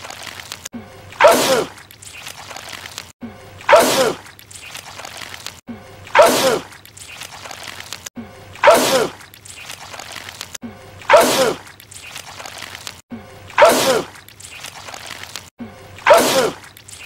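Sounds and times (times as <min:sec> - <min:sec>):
man sneezing loudly: 0:16.1 - 0:16.6.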